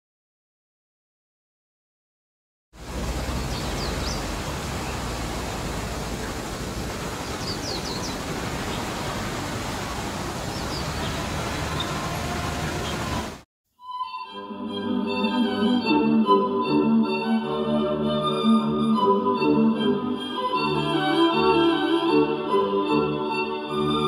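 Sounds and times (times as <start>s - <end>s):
outdoor background noise: 2.8s - 13.4s
high bird chirps: 3.3s - 5.0s, 7.2s - 8.9s, 10.5s - 12.1s.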